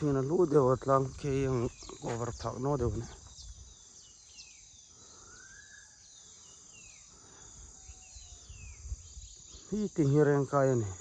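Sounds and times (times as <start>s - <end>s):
insects droning: 0.0s - 11.0s
rising and falling bird whistle: 4.4s - 6.4s
low wind rumble: 7.6s - 9.4s.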